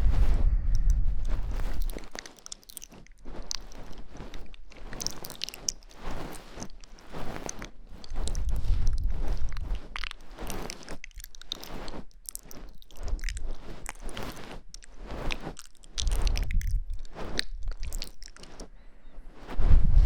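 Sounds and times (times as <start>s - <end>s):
low rumble on microphone: 0.0s - 2.2s, 8.0s - 10.1s, 16.0s - 17.9s, 18.7s - 20.0s
soft wet clicks and crackles: 0.7s - 18.8s.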